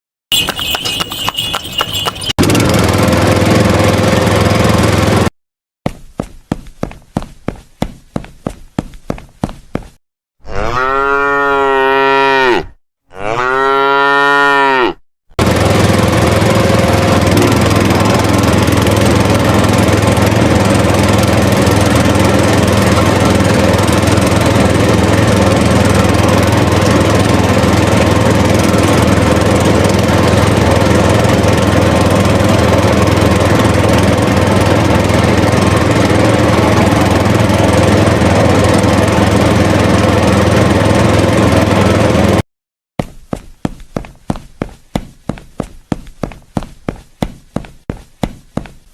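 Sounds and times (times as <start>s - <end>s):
cow mooing: 10.4s - 15.0s
engine idling: 15.4s - 42.4s.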